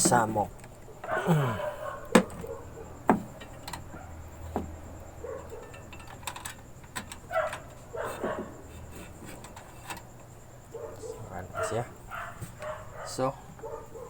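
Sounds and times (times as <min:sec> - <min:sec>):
equipment clicks and knocks: 0:02.0 - 0:10.3.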